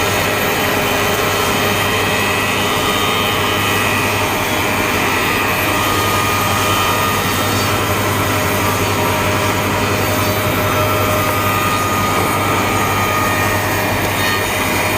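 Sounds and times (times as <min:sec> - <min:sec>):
wood moulding machine running: 0:00.0 - 0:14.9.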